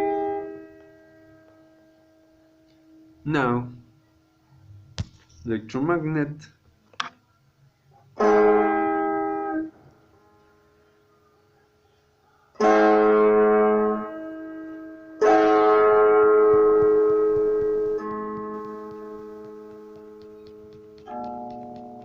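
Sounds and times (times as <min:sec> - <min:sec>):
sustained electric guitar chords: 0:12.6 - 0:22.0
faint held guitar tone: 0:13.5 - 0:22.0.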